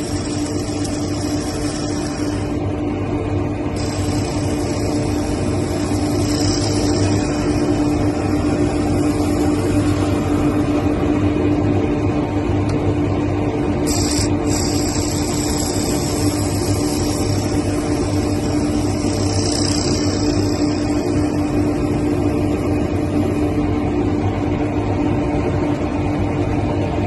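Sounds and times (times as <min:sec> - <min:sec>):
high hiss of cutting: 0:00.0 - 0:02.6, 0:03.8 - 0:10.5, 0:13.8 - 0:22.7
power tool motor hum: 0:00.0 - 0:02.7, 0:03.7 - 0:10.7, 0:13.8 - 0:23.3.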